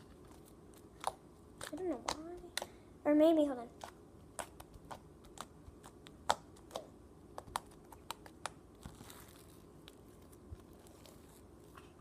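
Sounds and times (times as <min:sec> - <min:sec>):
sticky slime clicking and popping: 0:00.7 - 0:02.7, 0:03.8 - 0:09.0.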